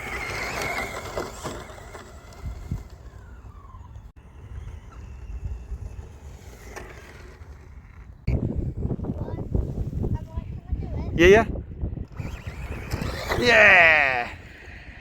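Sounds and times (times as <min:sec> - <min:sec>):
rc car motor whining: 0:00.0 - 0:08.6, 0:12.0 - 0:15.0.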